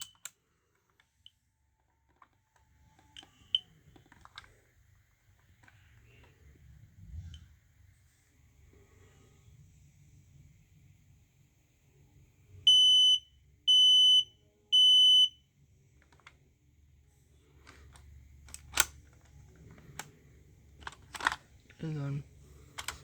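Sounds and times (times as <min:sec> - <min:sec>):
smoke alarm beeps: 0:12.7 - 0:15.4
sharp clicks: 0:17.7 - 0:19.0.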